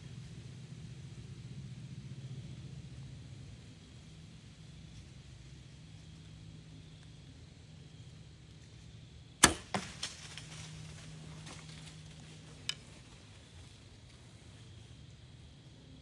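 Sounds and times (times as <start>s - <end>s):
bow string snap: 9.4s - 10.4s.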